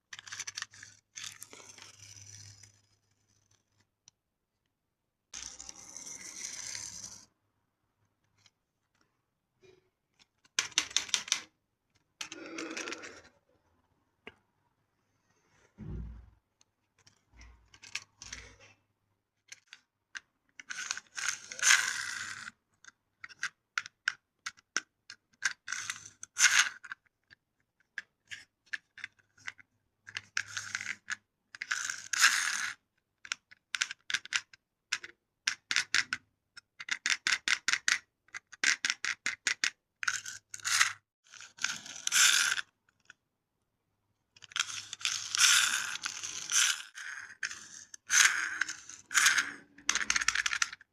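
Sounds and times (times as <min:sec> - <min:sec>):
toy cars clattering: 0:00.1 - 0:02.8, 0:10.2 - 0:11.5, 0:12.2 - 0:13.4, 0:17.0 - 0:18.8, 0:19.5 - 0:43.2, 0:44.4 - 0:50.9.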